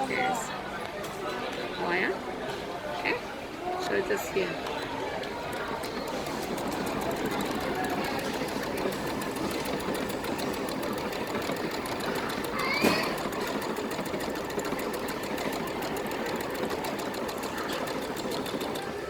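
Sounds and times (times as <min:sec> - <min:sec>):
sewing machine stitching: 0:04.8 - 0:19.0.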